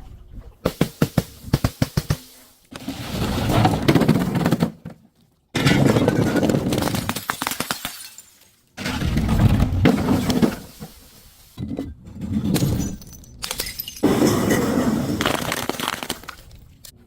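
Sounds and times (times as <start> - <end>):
glass being crushed: 6.8 - 8.4, 12.6 - 14.1, 15.2 - 16.5.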